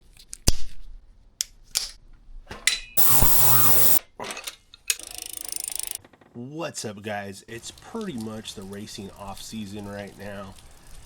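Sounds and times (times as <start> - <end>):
power tool running: 3.0 - 4.0.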